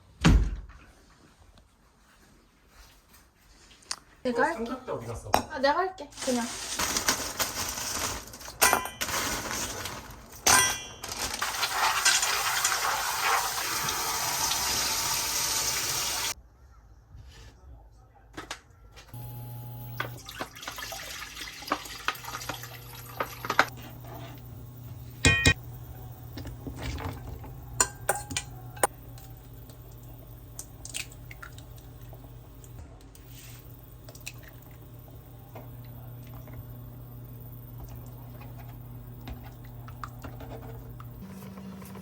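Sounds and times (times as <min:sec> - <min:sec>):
water running from tap: 0:11.4 - 0:16.4, 0:19.8 - 0:23.7
steady low hum: 0:22.9 - 0:42.0
dishes clinking: 0:25.2 - 0:25.6, 0:27.8 - 0:29.0.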